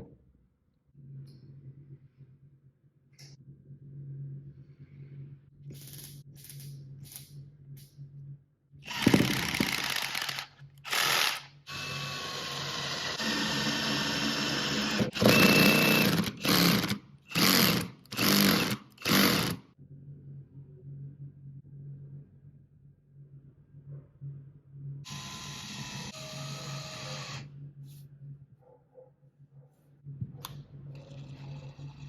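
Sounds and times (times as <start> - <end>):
cordless drill running in bursts: 8.9 - 19.6.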